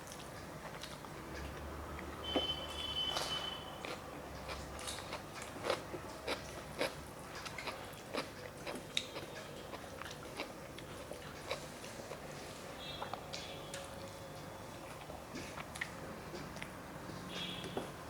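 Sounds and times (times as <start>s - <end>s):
person chewing food: 3.8s - 12.4s, 14.8s - 16.8s.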